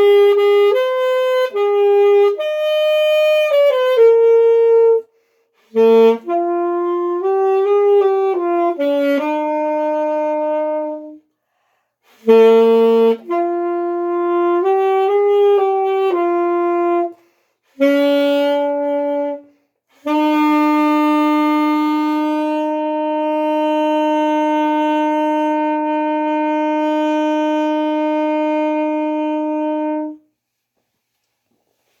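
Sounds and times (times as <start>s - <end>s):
solo wind instrument playing: 0.0s - 11.3s, 12.0s - 30.4s.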